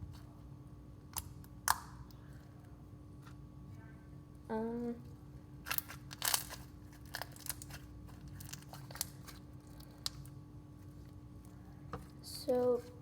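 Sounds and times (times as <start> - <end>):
slime crackling and popping: 5.6 - 10.3.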